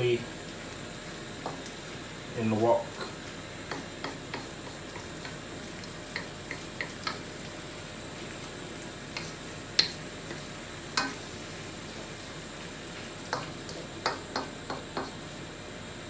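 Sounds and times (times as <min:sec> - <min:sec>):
food sizzling in a wok: 0:00.0 - 0:16.0.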